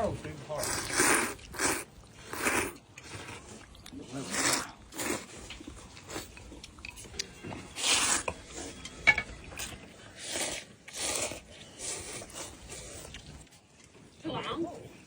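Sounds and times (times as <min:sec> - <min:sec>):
noodle slurping: 0:00.6 - 0:06.4, 0:07.7 - 0:08.4, 0:10.0 - 0:13.4
chewing: 0:00.6 - 0:14.1.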